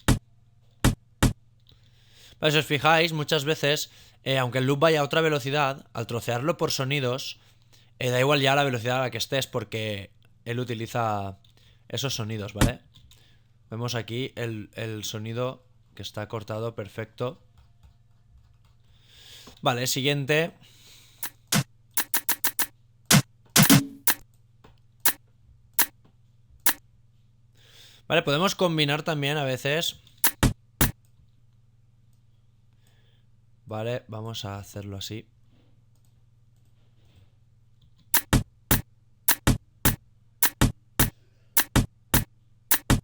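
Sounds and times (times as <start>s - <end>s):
sharp drum hits: 21.5s - 24.2s, 38.2s - 43.0s.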